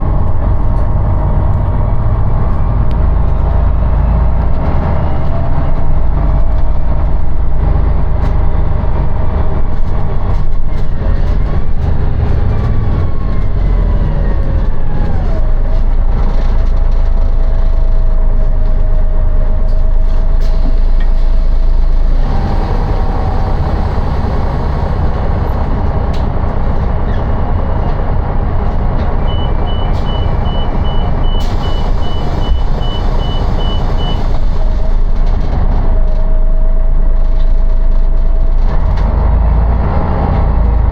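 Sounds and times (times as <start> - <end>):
bus engine rumble with whine: 0.0 - 40.9
vehicle reversing beeps: 29.3 - 34.3.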